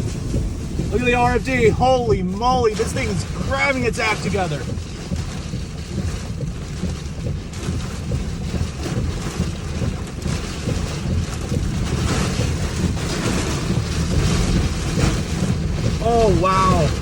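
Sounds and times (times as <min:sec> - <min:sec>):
gusty wind buffeting microphone: 0:00.0 - 0:17.0.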